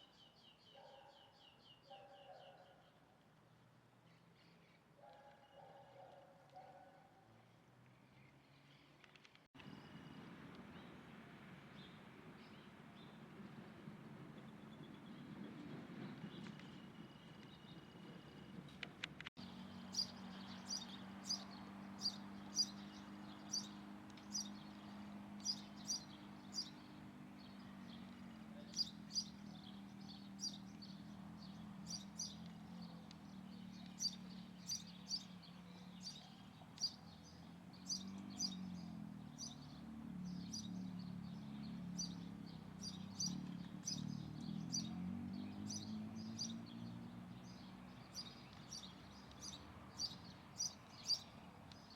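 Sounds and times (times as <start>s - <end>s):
small bird chirping: 19.4s - 51.9s.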